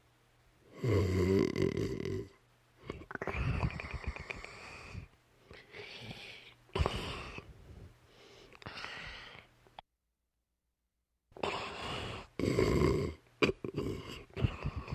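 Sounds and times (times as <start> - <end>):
dog snoring: 0.7 - 5.1, 11.4 - 14.9.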